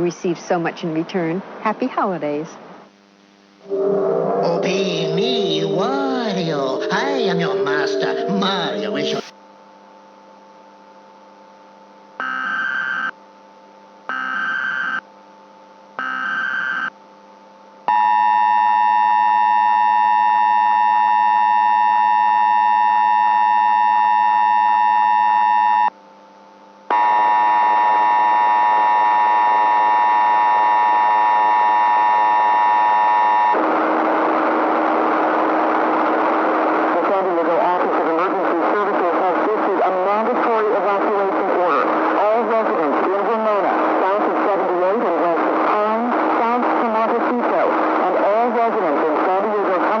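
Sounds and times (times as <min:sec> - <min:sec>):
low electrical hum: 0:00.0 - 0:50.0
harsh noisy hiss: 0:01.4 - 0:09.4
steady attention signal tone: 0:02.9 - 0:09.3
data tone bursts: 0:03.6 - 0:09.3.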